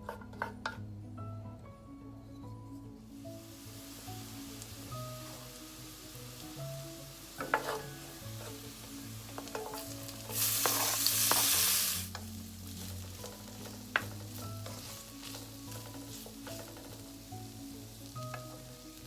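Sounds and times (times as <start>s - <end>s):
loud sizzling: 3.2s - 19.0s
utensil clinking and scraping pan: 7.3s - 19.0s.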